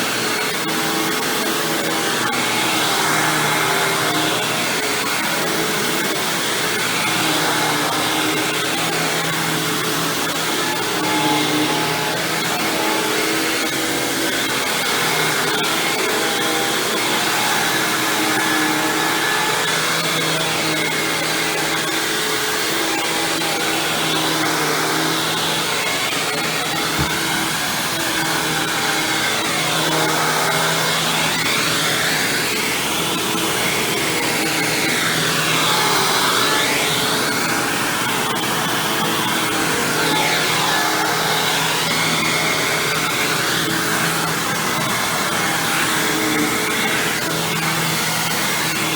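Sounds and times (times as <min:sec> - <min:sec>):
upright vacuum cleaner running: 0:00.0 - 0:48.9
brief thump: 0:27.0 - 0:27.3.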